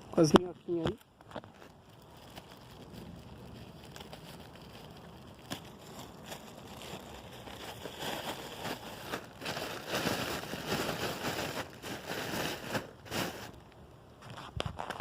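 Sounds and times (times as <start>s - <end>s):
rustling handling noise: 0.0s - 15.0s.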